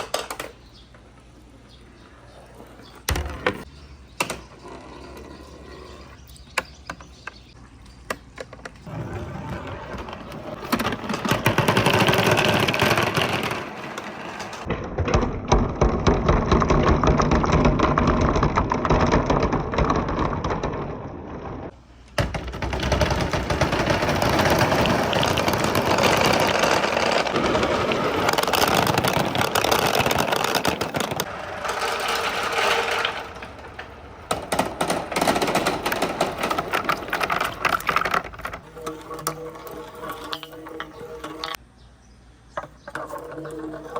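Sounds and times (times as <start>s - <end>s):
marbles rattling on wooden tracks: 9.5s - 41.6s.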